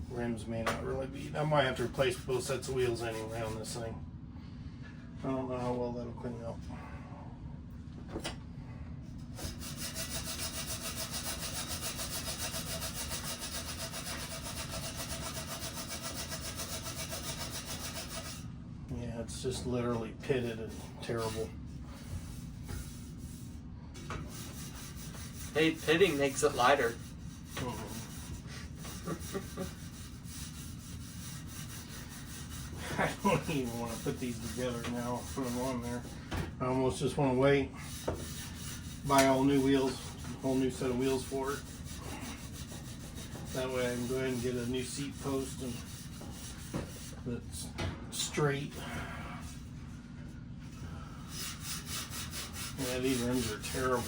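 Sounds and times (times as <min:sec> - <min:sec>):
low steady hum: 0:00.0 - 0:54.0
scrubbing on a bicycle rim: 0:24.3 - 0:36.1, 0:37.9 - 0:47.2, 0:51.3 - 0:54.0.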